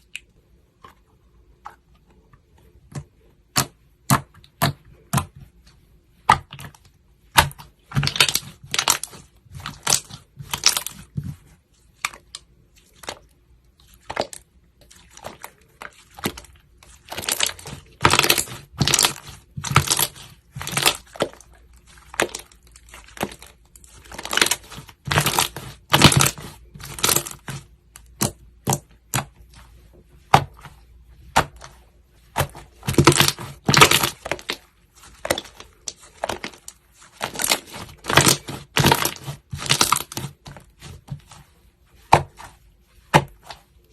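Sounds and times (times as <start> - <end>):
slime popping and crackling: 7.3 - 11.2, 15.2 - 29.3, 32.3 - 41.3.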